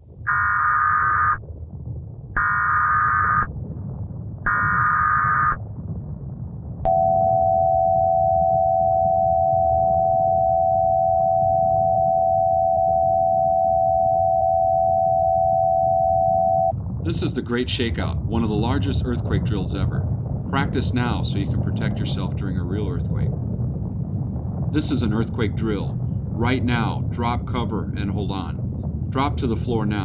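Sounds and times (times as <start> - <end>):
low rumbling noise: 0.0 - 30.0
buzzing data tones: 0.2 - 1.4, 2.4 - 3.5, 4.4 - 5.6, 6.9 - 16.7
two-tone attention signal: 6.9 - 16.7.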